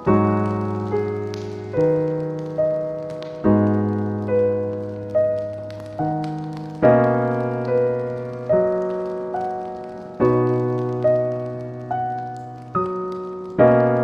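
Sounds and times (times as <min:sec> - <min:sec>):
faint fireplace crackling: 0:00.0 - 0:14.0
slow gentle piano: 0:00.0 - 0:14.0.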